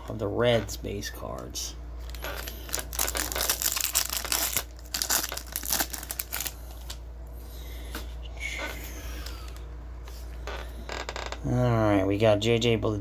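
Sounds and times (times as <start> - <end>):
plastic wrapping crinkling: 2.0 - 7.0.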